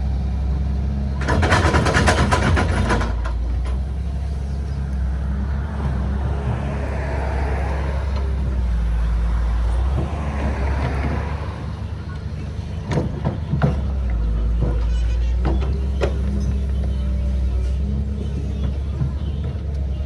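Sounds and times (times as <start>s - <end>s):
diesel engine droning: 0.0s - 20.0s
loud rattling clatter: 1.2s - 4.2s.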